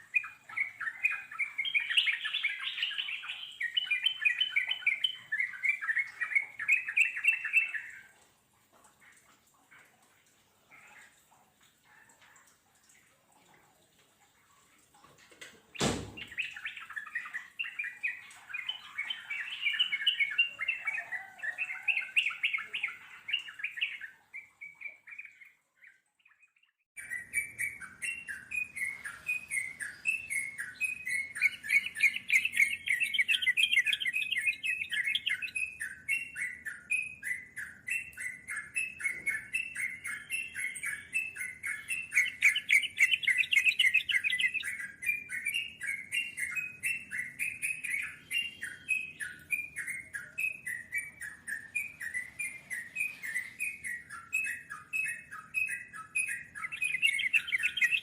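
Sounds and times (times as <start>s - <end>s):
bulbuls singing bubbling notes: 27.0s - 58.0s.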